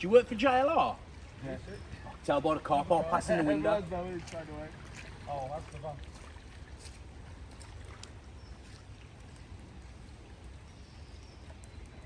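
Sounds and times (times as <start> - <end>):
rushing floodwater: 0.0 - 12.0.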